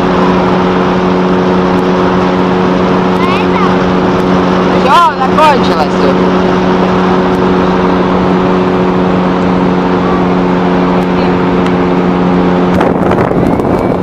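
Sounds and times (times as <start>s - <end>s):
motorboat engine humming: 0.0s - 14.0s
water rushing: 0.0s - 14.0s
wind: 0.0s - 14.0s.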